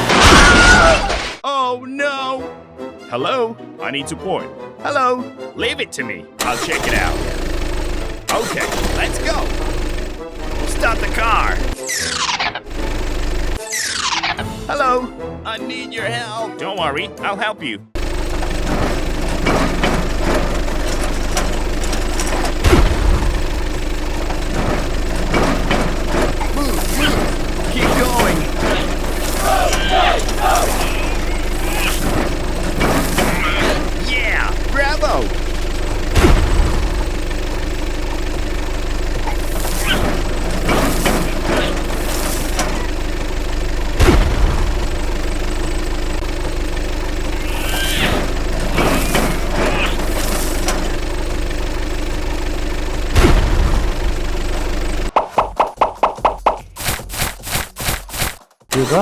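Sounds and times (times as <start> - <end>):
engine running with knocking: 6.4 - 14.4, 18.0 - 58.6
heavy thud: 21.2 - 23.7, 36.0 - 37.1.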